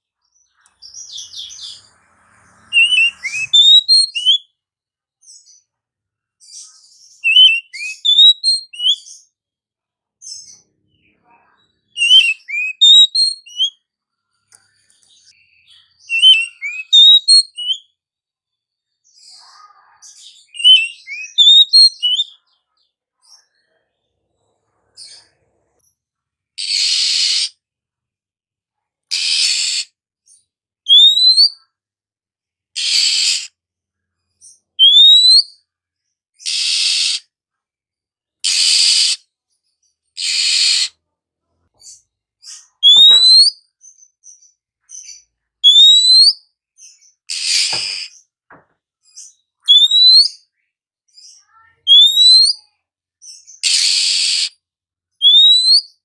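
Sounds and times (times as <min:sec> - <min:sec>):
songbird singing: 0:00.0 - 0:04.5, 0:06.4 - 0:09.4, 0:10.2 - 0:13.8, 0:14.5 - 0:18.0, 0:19.0 - 0:23.7, 0:34.4 - 0:35.4, 0:41.8 - 0:48.3, 0:49.1 - 0:50.6, 0:51.2 - 0:52.6.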